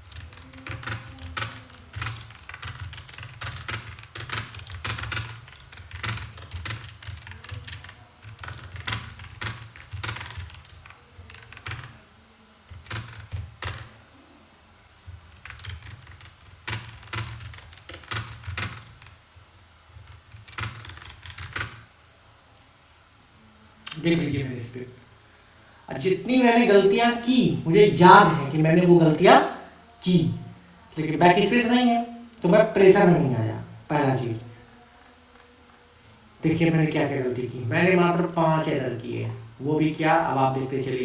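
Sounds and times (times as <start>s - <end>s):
typing on computer keyboard: 0.0s - 12.0s, 12.6s - 14.0s, 15.0s - 19.2s, 19.9s - 21.9s.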